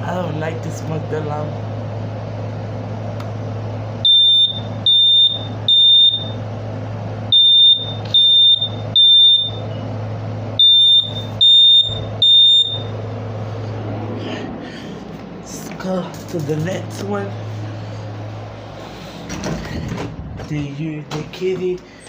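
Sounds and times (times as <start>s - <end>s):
smoke alarm high-pitched beeps: 4.0s - 6.4s, 7.3s - 9.9s, 10.6s - 13.0s.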